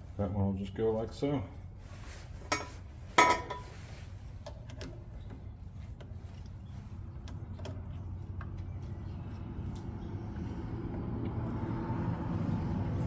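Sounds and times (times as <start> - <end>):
low engine rumble: 6.3 - 13.0.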